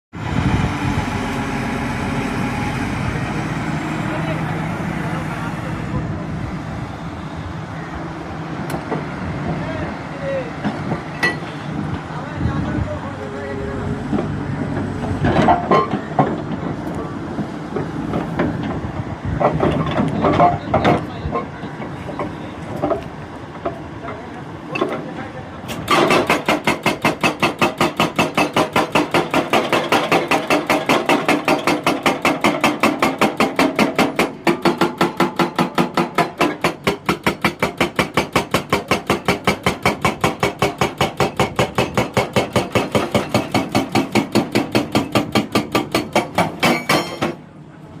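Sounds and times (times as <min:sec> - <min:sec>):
hydraulic breaker hammering rock: 0:25.9 - 0:47.4.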